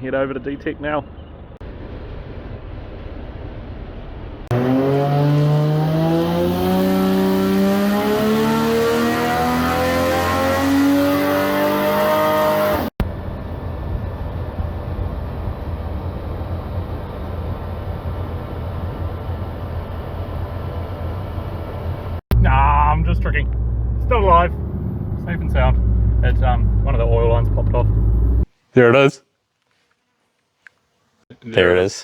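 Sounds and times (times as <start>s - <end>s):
car engine revving under load: 4.4s - 28.5s
low vehicle rumble: 12.9s - 28.5s.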